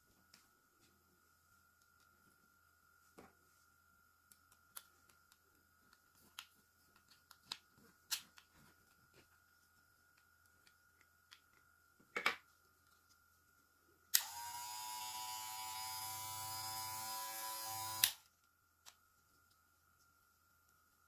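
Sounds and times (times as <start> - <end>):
hair clipper motor running: 14.2 - 18.2.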